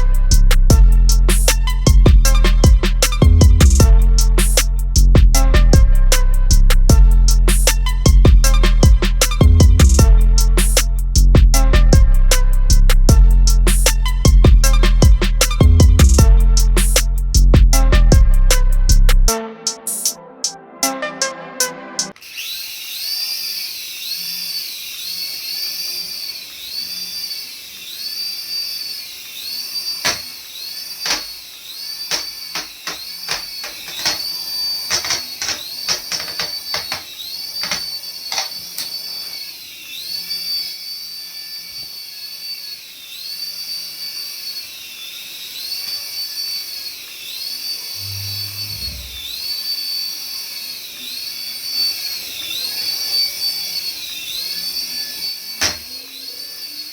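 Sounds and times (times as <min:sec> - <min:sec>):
toy electronic whine: 0:00.0 - 0:20.2, 0:21.1 - 0:56.9
sharp clicks: 0:31.0 - 0:31.4, 0:32.1 - 0:39.0.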